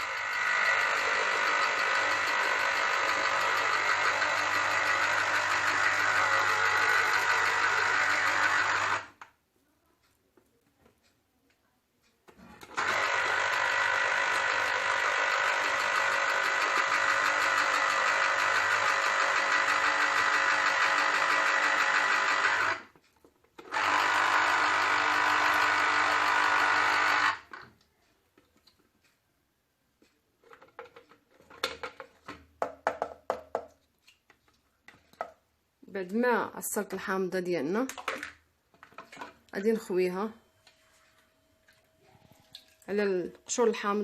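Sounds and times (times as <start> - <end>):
citrus juicer motor whirring: 0.0 - 9.2, 12.6 - 22.9, 23.6 - 27.7.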